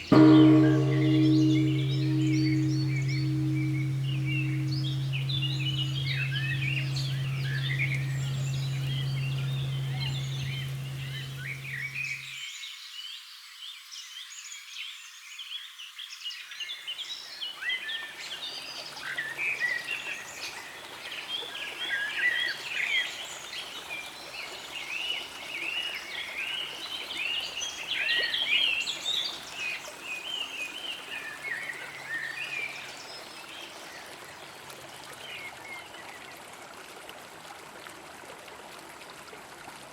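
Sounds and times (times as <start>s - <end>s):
bell humming low: 0.0s - 12.2s.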